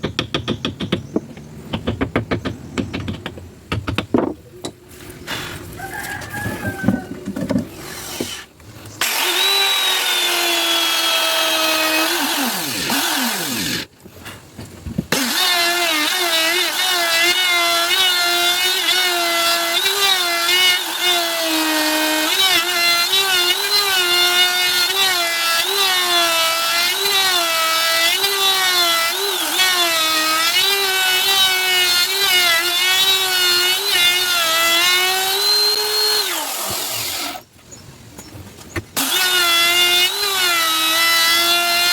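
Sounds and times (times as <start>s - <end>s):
knocks on wood: 0.0s - 4.4s.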